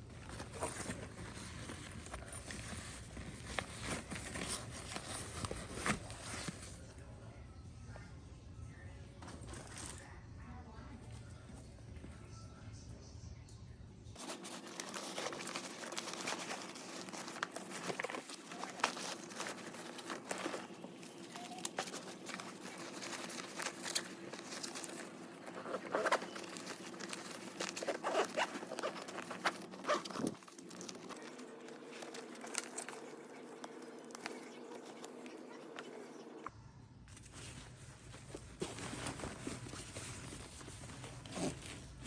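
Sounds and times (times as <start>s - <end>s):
packaging rustling and crinkling: 0.2s - 6.8s, 14.2s - 36.5s, 37.2s - 42.0s
steady low hum: 14.2s - 36.6s.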